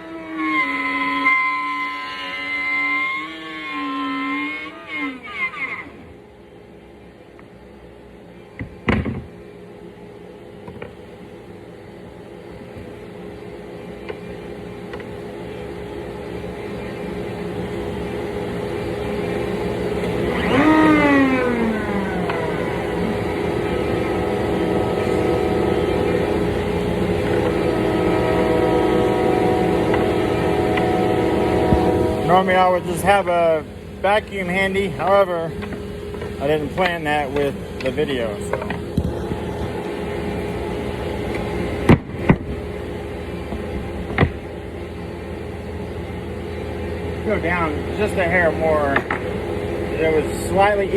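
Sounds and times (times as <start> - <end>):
router motor whining: 0.0 - 6.2, 19.4 - 33.7.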